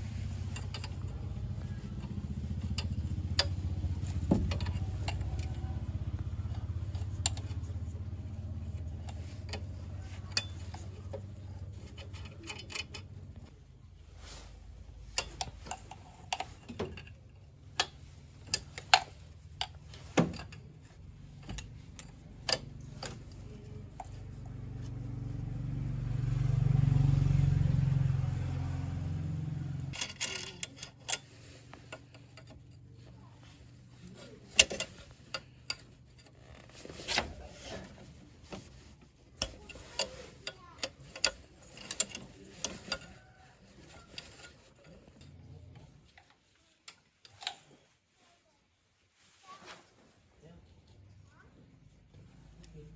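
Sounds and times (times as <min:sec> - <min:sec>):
tools and metal parts clicking: 0:00.0 - 0:13.7, 0:14.9 - 0:25.8, 0:29.1 - 0:48.0
low motor hum: 0:00.0 - 0:46.0.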